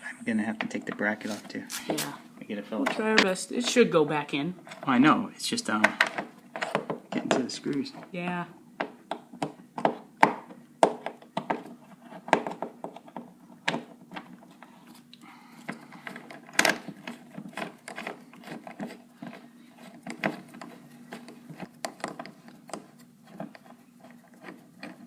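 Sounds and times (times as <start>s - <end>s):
faint steady hum: 0.0s - 25.0s.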